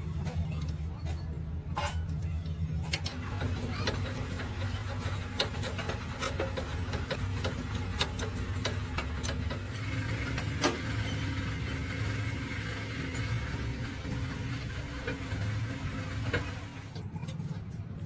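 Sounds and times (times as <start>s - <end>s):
motor humming: 3.1s - 17.0s.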